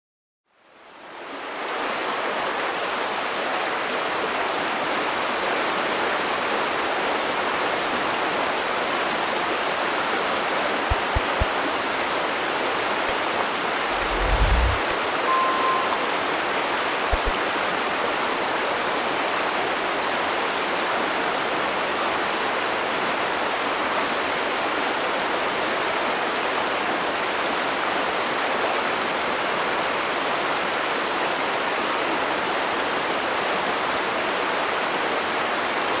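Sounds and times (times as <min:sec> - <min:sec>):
whistle-like note: 0:14.0 - 0:16.4.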